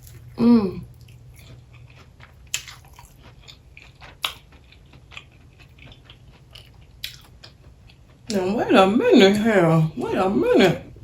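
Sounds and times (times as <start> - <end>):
crunchy chewing: 0.0 - 8.3.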